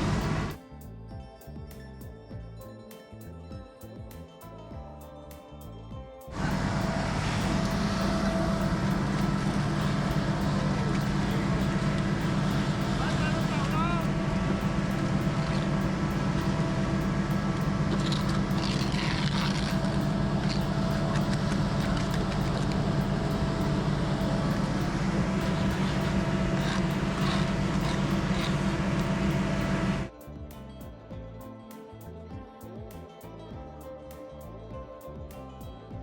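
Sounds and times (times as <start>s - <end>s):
heavy engine running: 0.0s - 0.6s, 6.3s - 30.1s.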